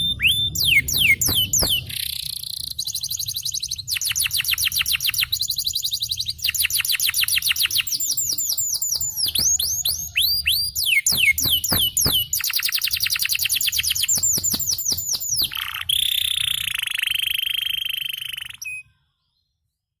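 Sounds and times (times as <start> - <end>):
canary singing trills: 0.0 - 19.4.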